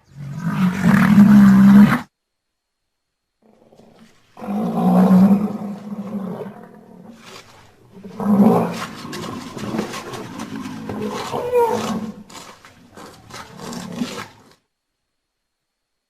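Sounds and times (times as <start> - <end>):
rhinoceros calling: 0.0 - 2.1, 3.6 - 14.6.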